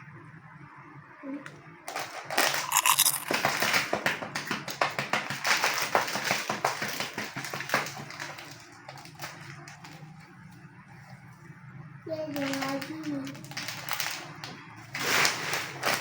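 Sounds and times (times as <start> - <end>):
snack pieces pouring and rattling: 1.9 - 9.7, 12.4 - 14.4, 15.0 - 16.0.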